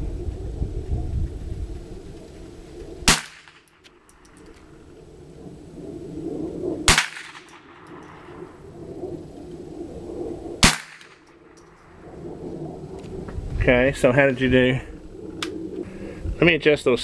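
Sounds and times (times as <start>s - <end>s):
rifle shots: 3.1s - 3.8s, 6.8s - 8.6s, 10.6s - 12.0s.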